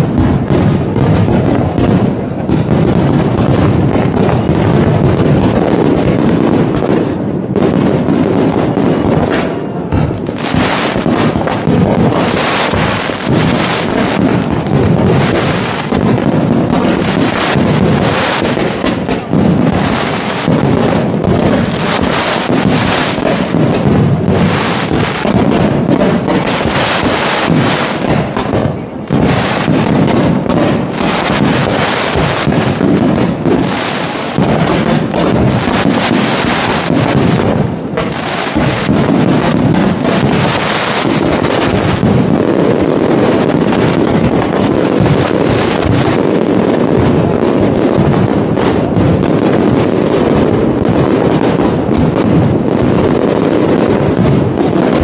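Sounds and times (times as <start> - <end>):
fireworks explosions and crackling: 0.0 - 55.0.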